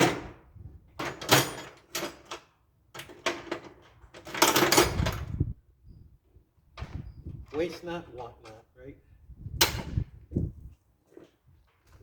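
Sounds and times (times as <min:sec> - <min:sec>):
wrench and metal parts clattering: 0:01.0 - 0:05.2.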